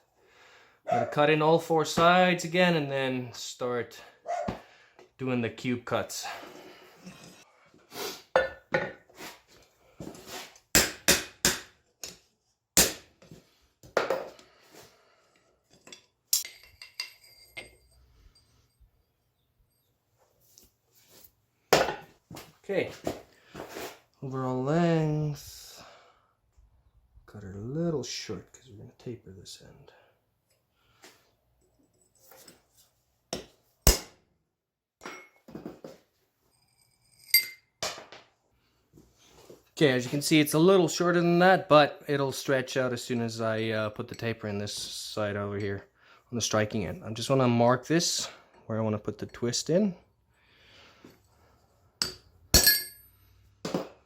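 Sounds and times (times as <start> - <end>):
metal tools clanking: 15.6 - 19.9, 52.0 - 53.2
metal knocks and clinks: 15.7 - 18.8, 52.0 - 53.2.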